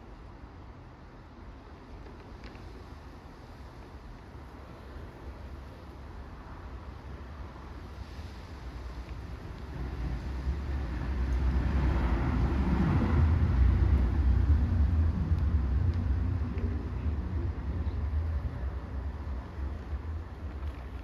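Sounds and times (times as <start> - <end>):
vehicle passing by: 9.9 - 20.3.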